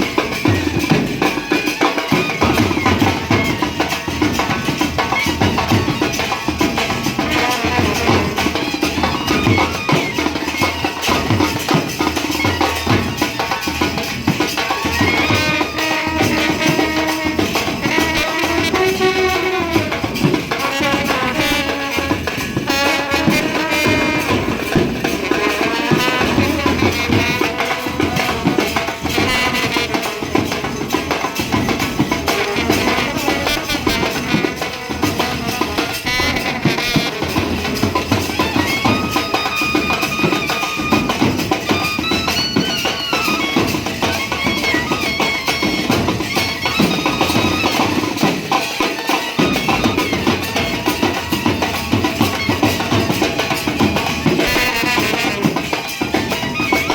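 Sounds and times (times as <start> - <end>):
brass band horns melody: 0.0 - 56.9
continuous drumming: 0.0 - 56.9.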